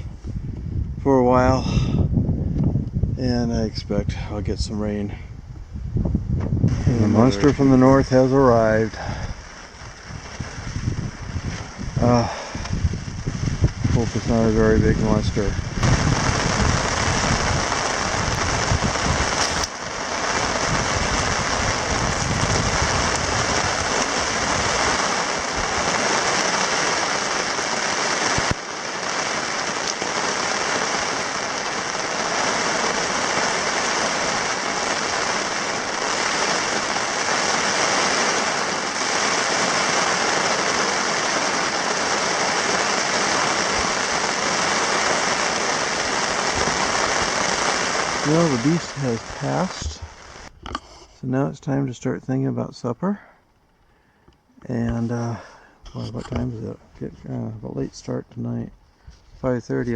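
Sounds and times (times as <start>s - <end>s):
wind buffeting the microphone: 0.0s - 26.8s, 46.0s - 50.7s, 55.9s - 59.9s
heavy rain falling: 6.7s - 50.5s.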